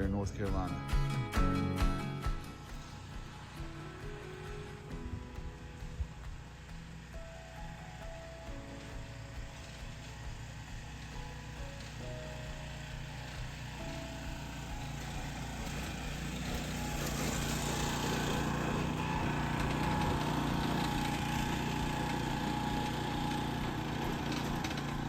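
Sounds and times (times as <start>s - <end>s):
small engine running: 0.0s - 25.0s.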